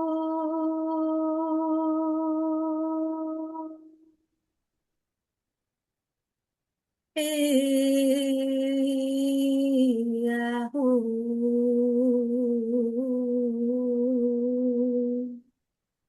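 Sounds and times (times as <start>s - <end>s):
woman chanting wordlessly: 0.0s - 3.9s, 7.2s - 15.4s.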